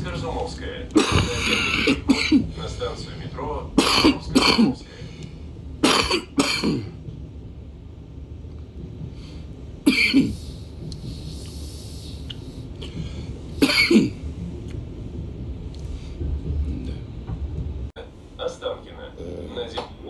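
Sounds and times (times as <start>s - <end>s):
electric train rumbling: 0.0s - 20.0s
man coughing: 1.0s - 2.6s, 3.8s - 4.8s, 5.8s - 7.0s, 9.8s - 10.4s, 13.6s - 14.2s.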